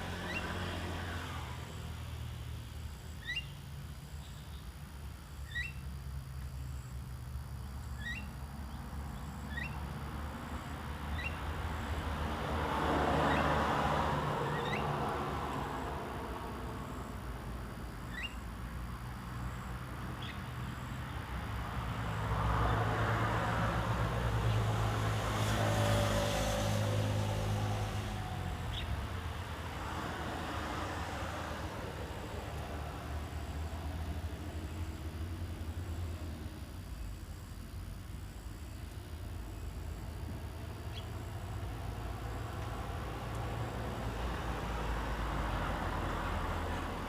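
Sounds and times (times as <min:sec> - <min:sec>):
vehicles passing: 0:00.0 - 0:47.0
short rising bird chirps: 0:03.2 - 0:03.6, 0:05.4 - 0:05.8, 0:08.0 - 0:08.3, 0:14.4 - 0:14.9, 0:18.1 - 0:18.5.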